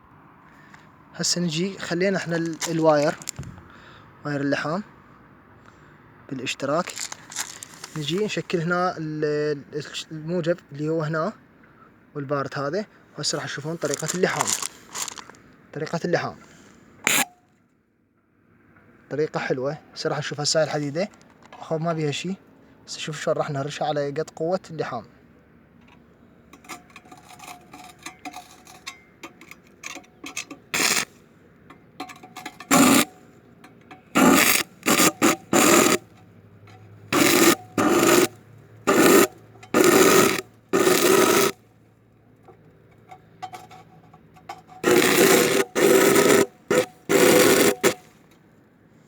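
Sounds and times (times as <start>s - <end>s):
welding rod scratching on steel: 1.5s - 3.4s, 6.6s - 8.4s, 13.4s - 15.4s, 17.0s - 17.3s, 26.6s - 31.2s, 32.0s - 33.2s, 34.1s - 36.2s, 37.1s - 41.6s, 43.4s - 48.2s.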